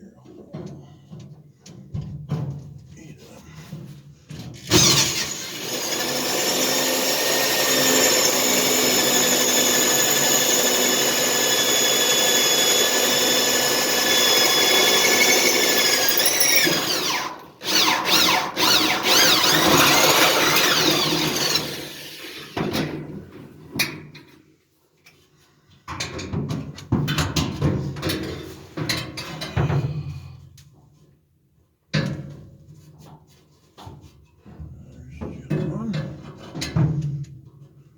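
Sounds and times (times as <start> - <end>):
power tool motor whine: 4.7 - 22.6.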